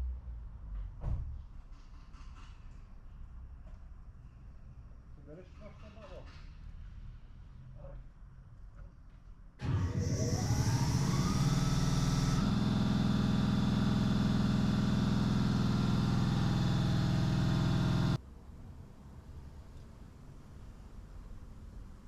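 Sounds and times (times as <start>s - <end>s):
motor spinning up and running: 9.6s - 18.2s.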